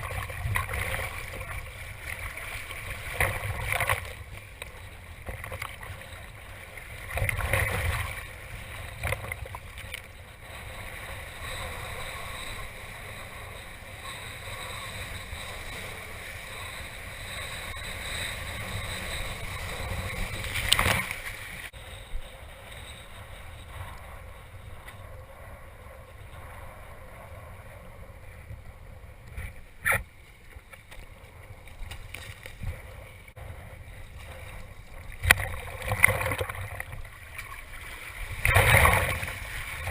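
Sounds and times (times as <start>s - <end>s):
water rushing and splashing: 0.0s - 12.5s, 18.8s - 21.8s, 31.6s - 39.9s.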